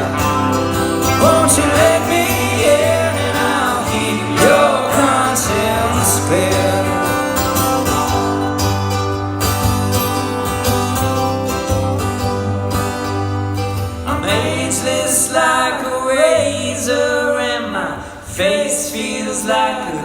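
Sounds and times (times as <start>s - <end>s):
wordless singing: 0.0s - 8.4s, 14.1s - 20.0s
live band playing country-rock: 0.0s - 17.4s.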